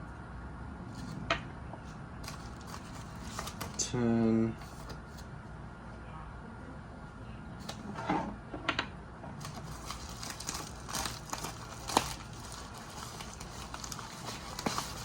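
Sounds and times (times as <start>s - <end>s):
packaging rustling: 2.2s - 3.8s, 9.4s - 15.0s.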